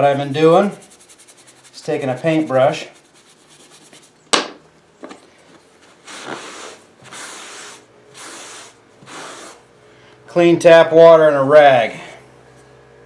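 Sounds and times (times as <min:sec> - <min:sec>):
brush scrubbing wood: 0:00.0 - 0:04.2, 0:06.1 - 0:09.6.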